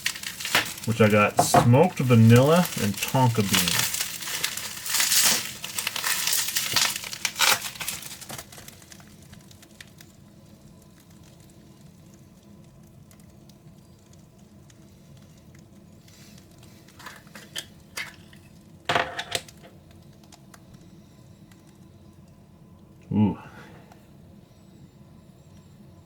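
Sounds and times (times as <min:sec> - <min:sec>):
packaging rustling: 0:00.0 - 0:09.9, 0:16.4 - 0:18.4
container knocks: 0:01.3 - 0:01.9.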